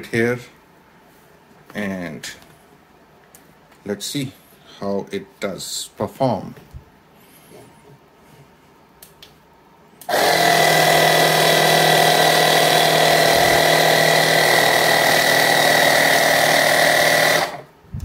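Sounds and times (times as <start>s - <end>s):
electric air compressor running: 10.0s - 17.8s.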